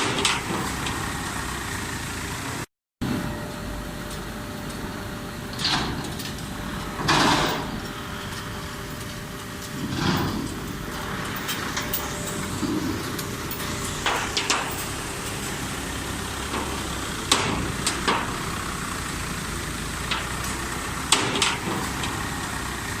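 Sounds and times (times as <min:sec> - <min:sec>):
baler machine running: 0:00.0 - 0:23.0
sharp metallic knocks: 0:11.4 - 0:15.4, 0:16.4 - 0:18.4, 0:21.0 - 0:22.2.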